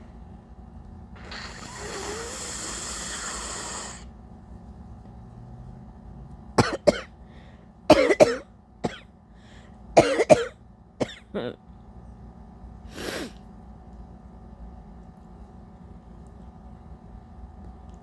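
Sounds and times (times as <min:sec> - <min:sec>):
woman blowing her nose: 0:01.2 - 0:04.1, 0:12.9 - 0:13.4
short sharp coughs: 0:06.6 - 0:07.1, 0:07.9 - 0:09.0, 0:10.0 - 0:11.3.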